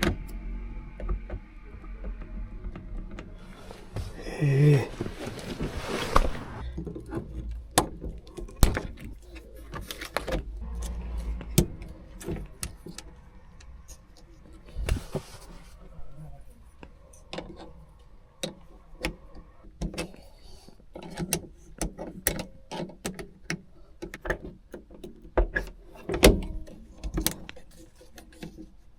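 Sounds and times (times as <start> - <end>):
scraping rustles: 3.3 - 21.1.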